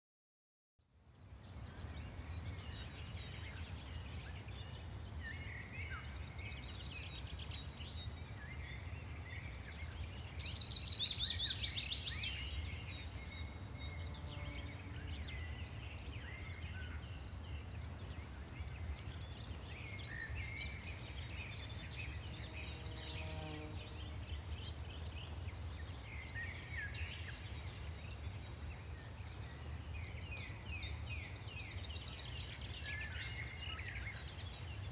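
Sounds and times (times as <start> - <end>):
birds chirping: 1.3 - 34.9
bird trilling: 20.2 - 20.8, 24.2 - 24.8, 26.4 - 27.0.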